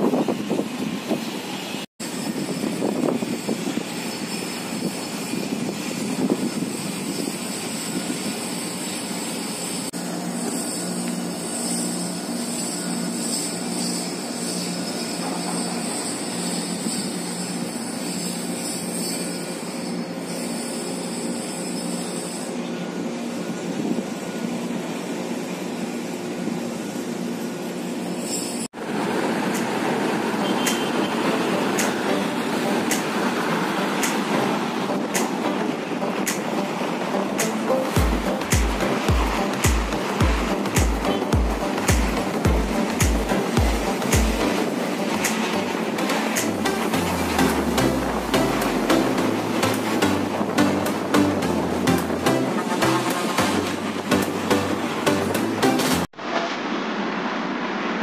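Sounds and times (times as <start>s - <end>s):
outdoor vehicle noise: 0.0s - 58.0s
pulsing low hum: 34.5s - 56.0s.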